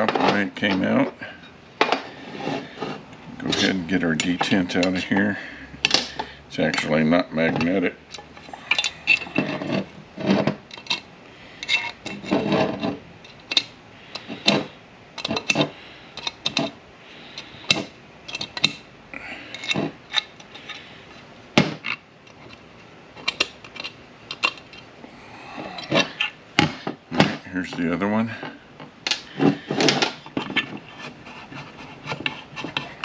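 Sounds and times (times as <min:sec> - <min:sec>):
metal tools clinking: 0:08.4 - 0:09.9.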